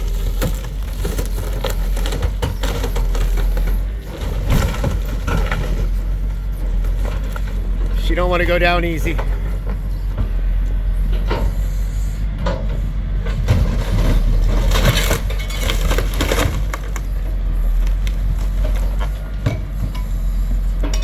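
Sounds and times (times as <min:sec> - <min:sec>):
boat hull cracking and splintering: 0:00.0 - 0:03.5, 0:14.6 - 0:17.0
heavy machine engine drone: 0:00.0 - 0:21.0.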